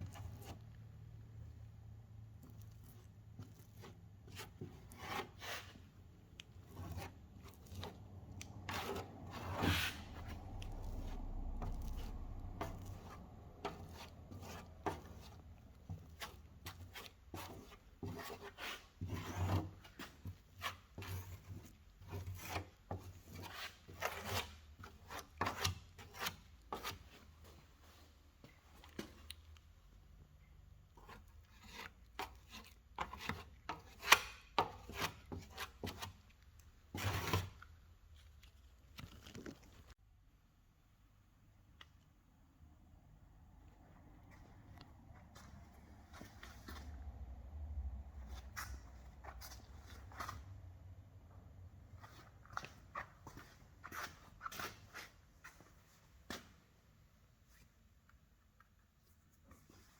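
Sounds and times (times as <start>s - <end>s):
hand tool scraping body filler: 2.4s - 27.6s, 31.0s - 36.2s.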